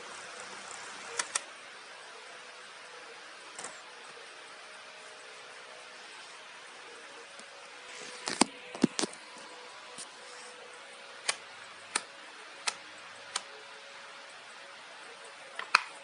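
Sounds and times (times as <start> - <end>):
electric fan humming: 0.0 - 16.0
sharp clicks: 1.1 - 1.5, 11.2 - 13.5.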